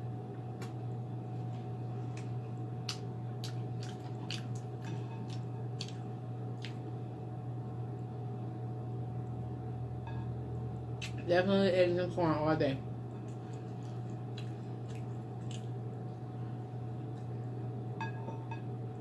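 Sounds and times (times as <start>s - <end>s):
steady low hum: 0.0s - 19.0s
wet chewing and lip-smacking: 2.0s - 6.9s, 13.1s - 15.9s.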